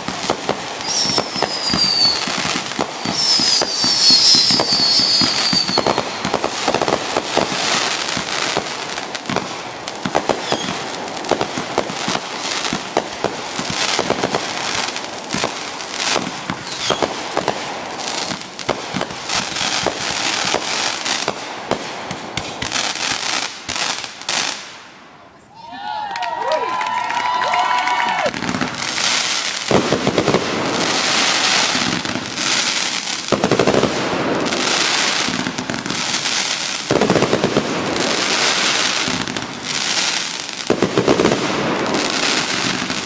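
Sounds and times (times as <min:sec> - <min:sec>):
fireworks popping and crackling: 0:00.0 - 0:24.9, 0:26.5 - 0:43.0
falling firework whistle: 0:00.7 - 0:07.5, 0:10.1 - 0:10.8, 0:16.5 - 0:17.2.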